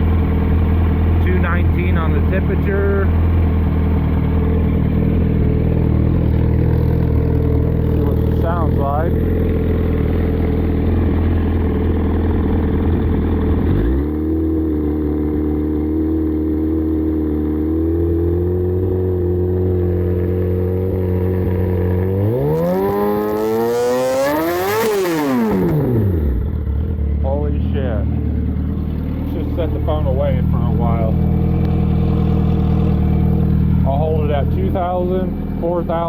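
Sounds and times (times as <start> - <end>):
engine idling and revving: 0.0 - 36.0.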